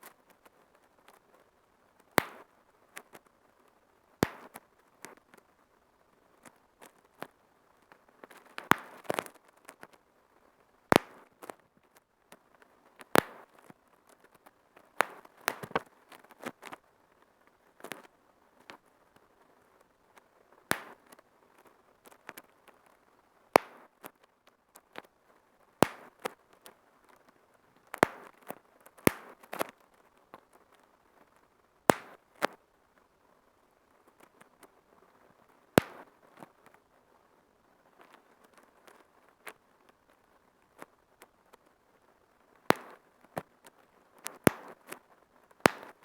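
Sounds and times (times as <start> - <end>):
bubble wrap popping: 15.0 - 15.8, 20.7 - 21.1, 23.6 - 23.9, 29.0 - 29.7, 35.8 - 36.1, 42.7 - 43.0, 44.3 - 45.0, 45.6 - 46.0.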